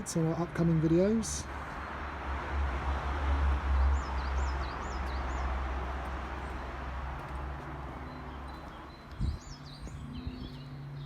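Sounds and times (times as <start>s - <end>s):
small bird chirping: 7.3s - 11.0s.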